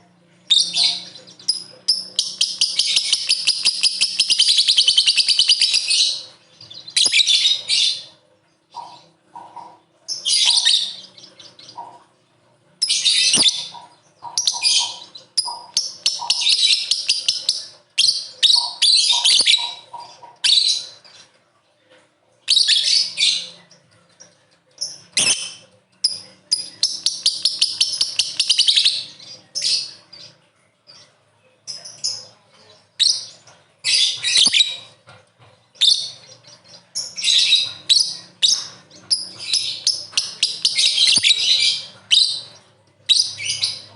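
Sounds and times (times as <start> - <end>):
lovebird chattering: 0.5 - 12.2, 12.8 - 21.0, 24.8 - 30.3, 35.8 - 43.9.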